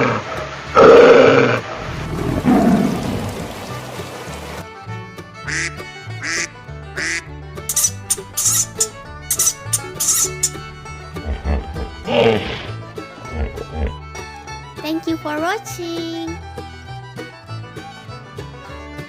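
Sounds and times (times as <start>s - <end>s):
duck quacking: 5.5s - 10.6s
background music with percussion: 7.0s - 14.6s.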